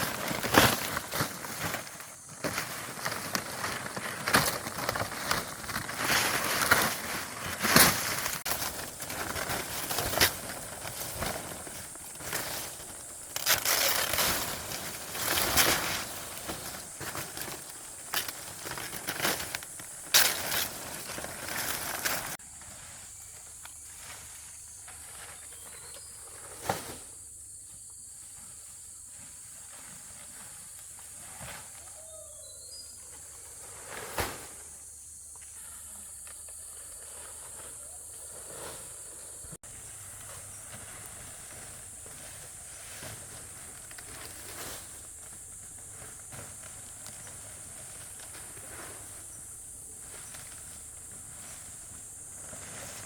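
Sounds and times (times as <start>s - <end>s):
leafy vegetation rustling and crackling: 0.0s - 27.2s, 36.4s - 53.0s
faint chirps: 31.8s - 33.6s.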